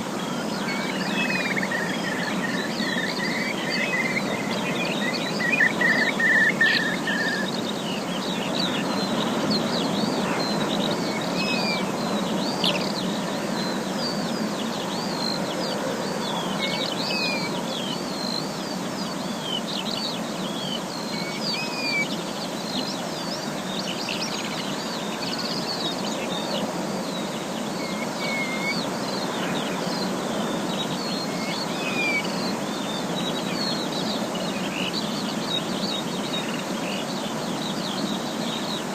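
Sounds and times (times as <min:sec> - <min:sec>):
birds chirping: 0:00.0 - 0:38.9
bird trill: 0:00.2 - 0:14.2, 0:27.8 - 0:35.2.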